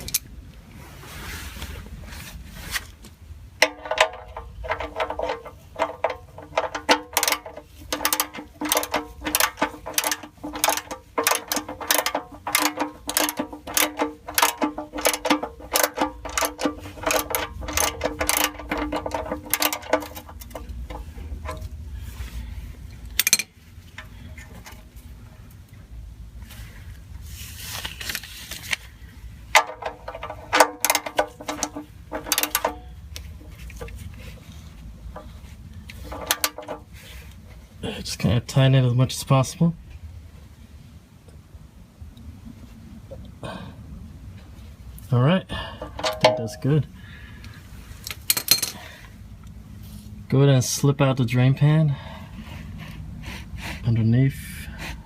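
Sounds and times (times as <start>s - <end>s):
ratchet wrench clicking: 3.6s - 21.6s, 29.6s - 32.8s.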